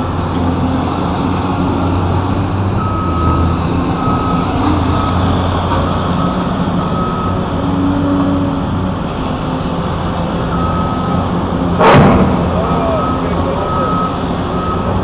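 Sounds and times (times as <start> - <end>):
diesel engine running: 0.0 - 15.0
reversing alarm beeping: 2.8 - 7.5, 10.5 - 11.2, 12.6 - 15.0.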